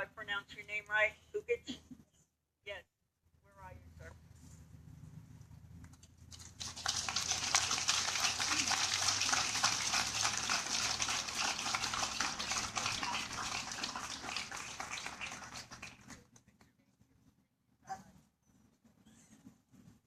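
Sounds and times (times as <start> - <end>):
crowd applauding: 6.3 - 16.4.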